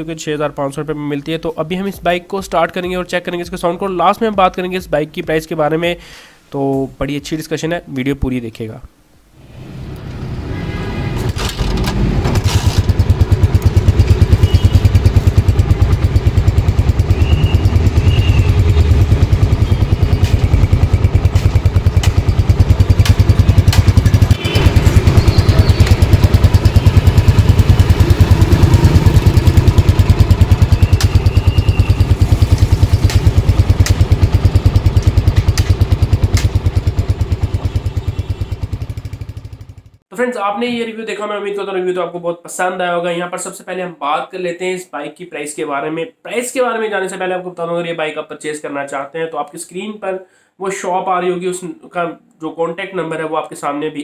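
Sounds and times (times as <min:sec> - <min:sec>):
motorcycle engine running: 0:11.6 - 0:40.0.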